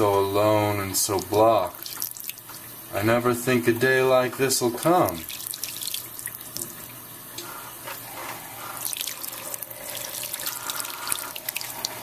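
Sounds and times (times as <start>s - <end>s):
water running and splashing: 0.1s - 3.0s, 4.3s - 12.0s
water drips: 1.0s - 2.9s, 4.7s - 7.5s, 8.8s - 12.0s.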